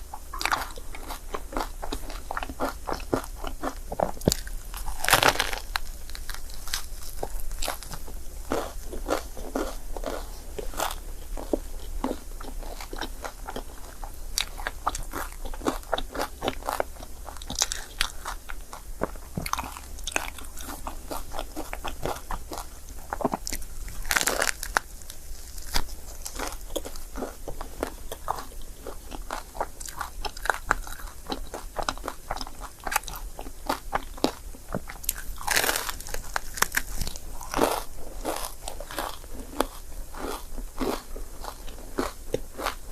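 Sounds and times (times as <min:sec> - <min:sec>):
wet chewing and bites: 0:00.2 - 0:42.8.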